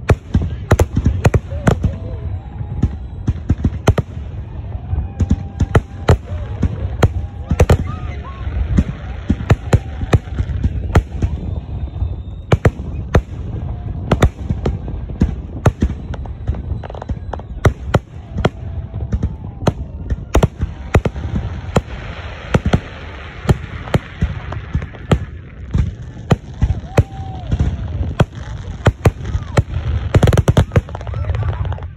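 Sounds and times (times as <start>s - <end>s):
fireworks bangs and crackling: 0.0s - 31.9s.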